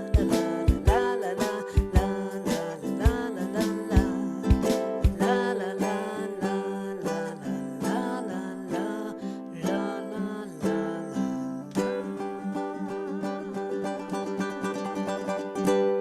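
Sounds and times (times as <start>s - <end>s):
ukulele strumming: 0.0s - 16.0s.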